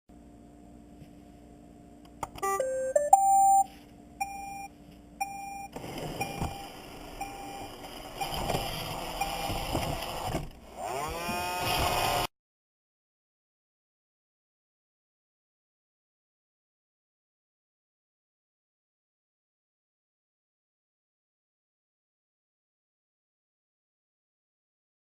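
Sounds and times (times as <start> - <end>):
robot vacuum beeping: 2.4 - 12.3
motor whine: 5.7 - 12.3
robot vacuum motors whirring: 5.7 - 12.3
robot vacuum start-up tune: 5.9 - 10.2.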